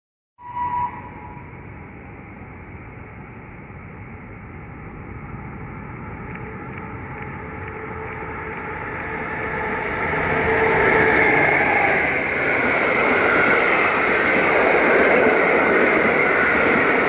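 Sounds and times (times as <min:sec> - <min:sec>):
train wheels rumbling on rails: 0:00.7 - 0:17.0
faint ticks: 0:06.2 - 0:09.6.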